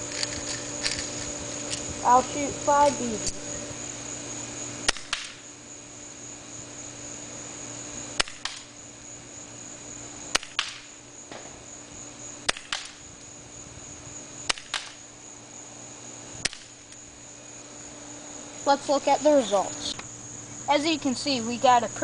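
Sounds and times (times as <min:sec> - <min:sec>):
airsoft pistol shots: 0:04.9 - 0:05.4, 0:08.2 - 0:08.7, 0:10.3 - 0:11.4, 0:12.5 - 0:13.0, 0:14.5 - 0:15.0, 0:16.4 - 0:16.7.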